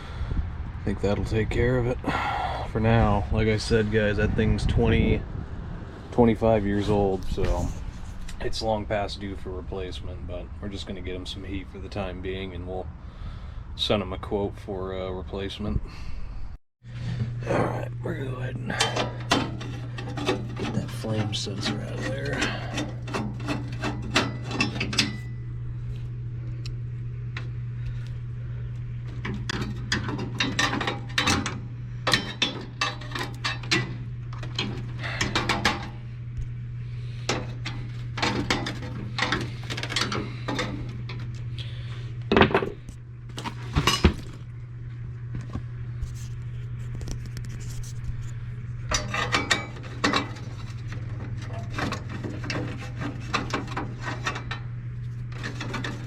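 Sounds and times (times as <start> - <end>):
steady low hum: 0.0 - 56.0
metal tools clinking and knocking: 18.7 - 25.4, 29.2 - 35.9, 43.4 - 44.4, 48.9 - 54.6.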